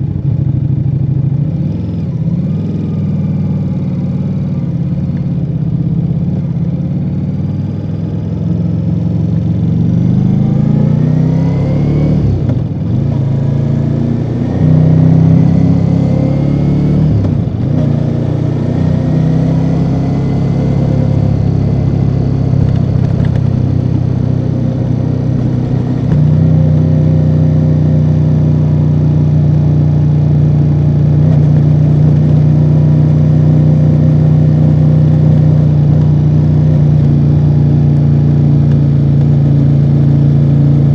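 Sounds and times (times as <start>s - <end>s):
motorcycle engine revving through gears: 0.0s - 40.9s.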